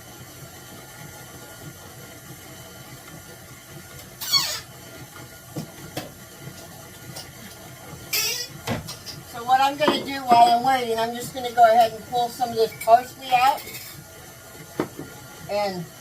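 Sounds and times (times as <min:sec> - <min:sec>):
electric mixer running: 0:00.0 - 0:16.0
high squeak falling in pitch: 0:04.2 - 0:04.7, 0:08.1 - 0:08.5.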